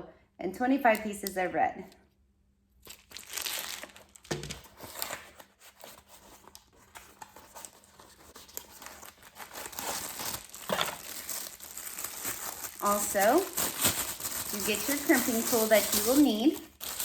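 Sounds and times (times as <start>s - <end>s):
packaging crinkling and rustling: 2.8s - 17.0s.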